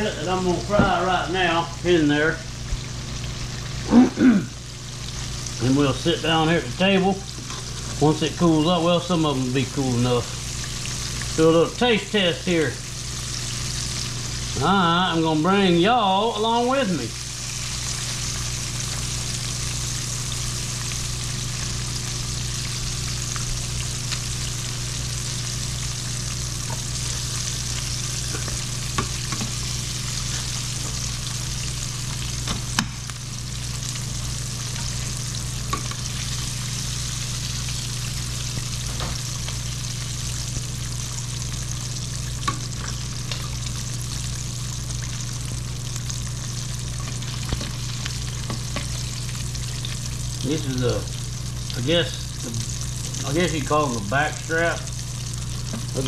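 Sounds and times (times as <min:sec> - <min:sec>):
food sizzling in hot oil: 0:00.0 - 0:56.0
oil crackles and pops: 0:16.3 - 0:56.0.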